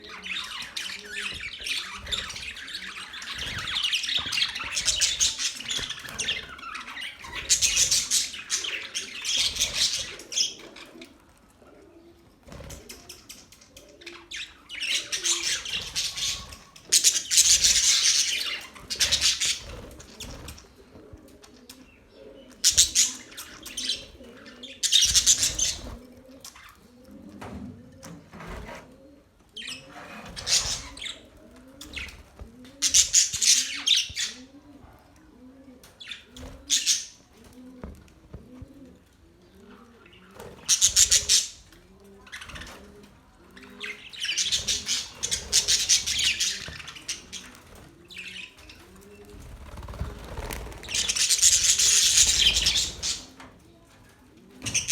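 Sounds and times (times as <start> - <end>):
budgerigars chirping and chattering: 0.0 - 11.0, 12.9 - 20.6, 21.9 - 26.8, 29.6 - 34.4, 36.0 - 37.3, 39.7 - 42.8, 43.6 - 53.5.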